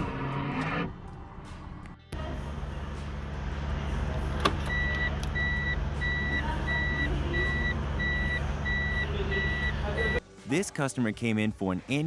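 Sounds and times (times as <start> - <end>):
steady low hum: 2.2 - 10.2
high electronic warning beep: 4.7 - 10.2.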